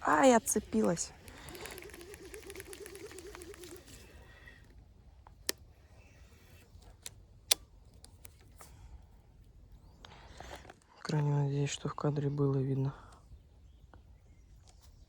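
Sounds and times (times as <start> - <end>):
fishing reel clicks: 0.2 - 4.8.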